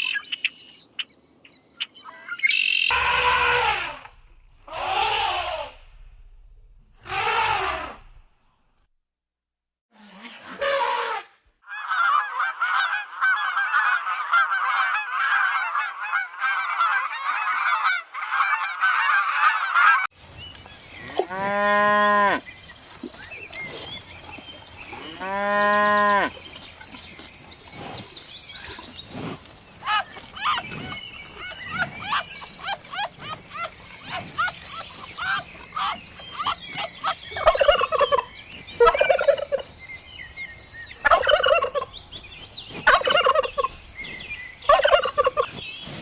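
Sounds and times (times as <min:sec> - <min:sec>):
waterfowl flock honking: 0:00.0 - 0:01.1, 0:01.9 - 0:03.9, 0:35.2 - 0:39.6, 0:41.0 - 0:41.9, 0:42.9 - 0:43.7, 0:44.7 - 0:45.5.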